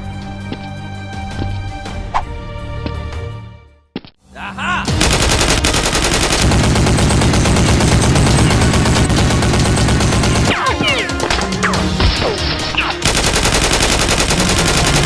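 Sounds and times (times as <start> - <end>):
music: 0.0 - 15.0
automatic gunfire: 5.0 - 11.1, 13.0 - 15.0.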